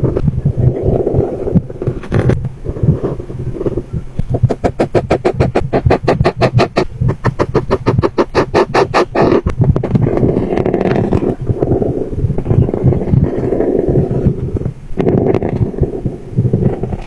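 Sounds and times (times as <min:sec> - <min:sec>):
marker scribbling on paper: 0:04.6 - 0:09.4.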